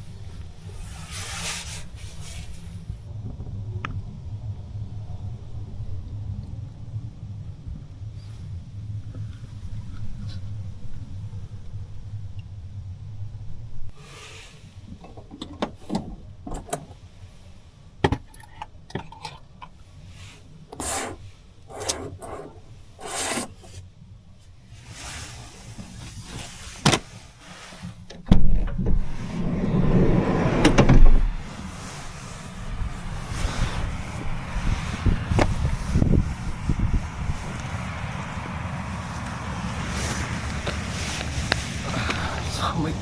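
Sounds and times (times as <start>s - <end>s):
wind gust buffeting van: 0.0s - 14.0s, 28.2s - 43.0s
rustling and light knocks: 23.3s - 36.1s.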